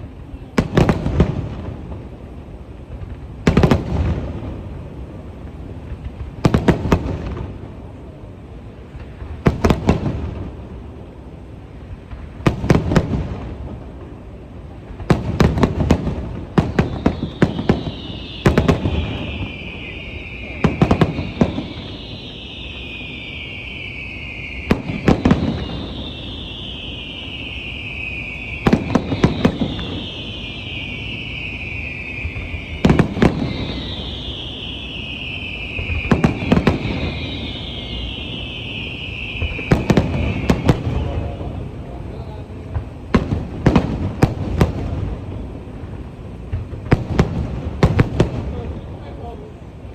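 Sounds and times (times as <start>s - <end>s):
fireworks bangs: 0.0s - 49.9s
high whistle sliding down: 16.5s - 42.4s.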